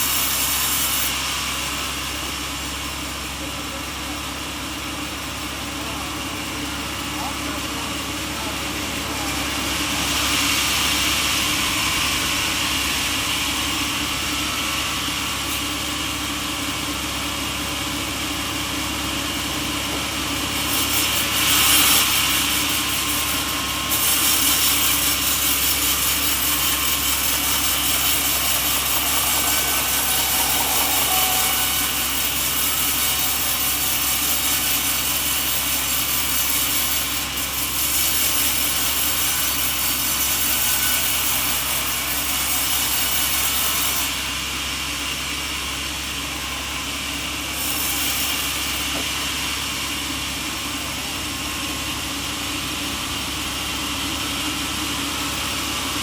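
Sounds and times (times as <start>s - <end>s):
sawmill saw cutting log: 0.0s - 56.0s.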